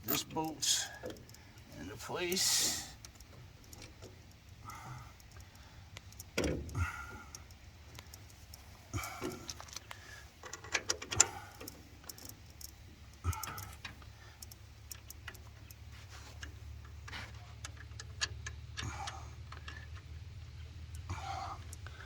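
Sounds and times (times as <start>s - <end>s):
metallic clicks of bolt turning: 0.0s - 15.8s.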